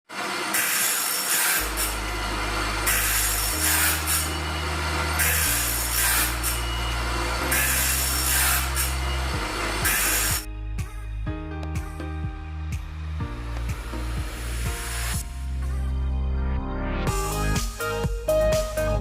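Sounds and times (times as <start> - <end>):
rasping strokes on wood: 0.5 - 10.5
background music with bass line: 1.8 - 19.0.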